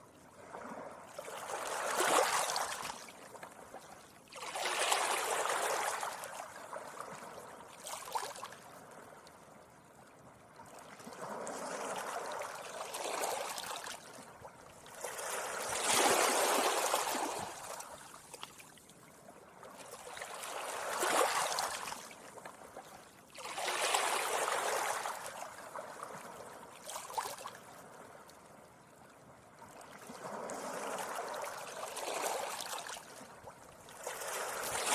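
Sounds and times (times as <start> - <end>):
waves washing onto beach: 15.0 - 18.2, 33.9 - 34.9.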